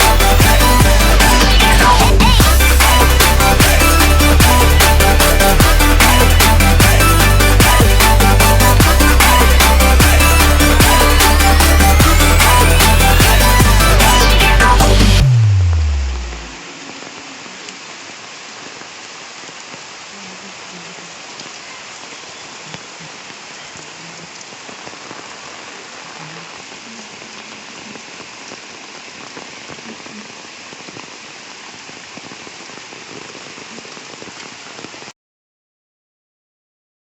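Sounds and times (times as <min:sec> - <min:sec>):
heavy rain falling: 0:00.0 - 0:35.1.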